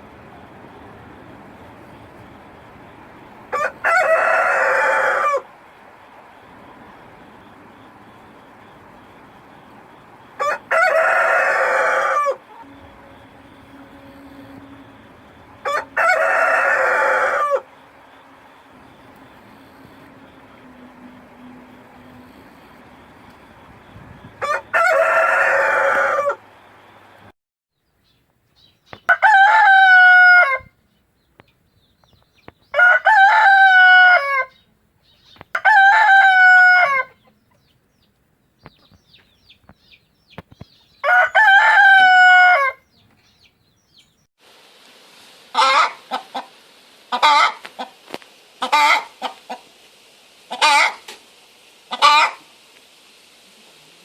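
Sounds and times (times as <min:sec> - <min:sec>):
loud chicken call: 0:03.5 - 0:05.5, 0:10.4 - 0:17.9, 0:24.4 - 0:26.5, 0:29.1 - 0:30.8, 0:32.7 - 0:34.6, 0:35.5 - 0:37.3, 0:41.0 - 0:43.0, 0:45.5 - 0:48.0, 0:48.6 - 0:49.7, 0:50.5 - 0:51.2, 0:51.9 - 0:52.5
rooster crowing: 0:03.5 - 0:05.5, 0:10.3 - 0:21.7, 0:24.4 - 0:26.6, 0:29.1 - 0:30.8, 0:32.7 - 0:34.6, 0:35.5 - 0:37.2, 0:41.0 - 0:42.9, 0:45.5 - 0:46.5, 0:47.1 - 0:47.7, 0:48.6 - 0:49.3, 0:50.5 - 0:51.0, 0:51.9 - 0:52.5
steady hiss: 0:44.4 - 0:54.0
hen clucking: 0:45.5 - 0:46.5, 0:47.1 - 0:48.0, 0:48.6 - 0:49.7, 0:50.5 - 0:51.2, 0:51.9 - 0:52.5.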